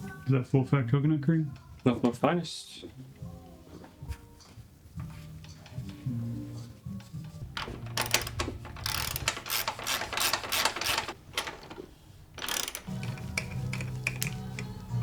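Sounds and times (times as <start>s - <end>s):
rapid ratcheting clicks: 7.6s - 11.8s, 12.4s - 14.7s.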